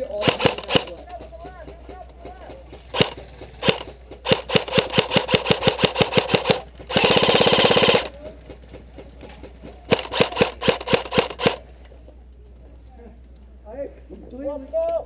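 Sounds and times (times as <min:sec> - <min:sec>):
airsoft rifle shots: 0:00.0 - 0:01.2, 0:02.9 - 0:08.2, 0:09.9 - 0:11.6.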